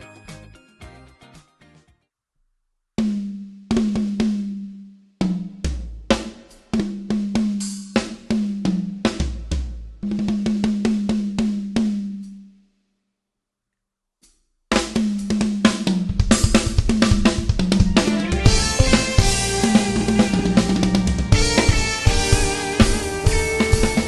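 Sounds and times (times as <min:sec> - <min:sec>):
full drum kit playing: 0:03.0 - 0:12.4, 0:14.7 - 0:24.0
bass drum kicks: 0:16.1 - 0:24.0
tom drum hits: 0:16.1 - 0:24.0.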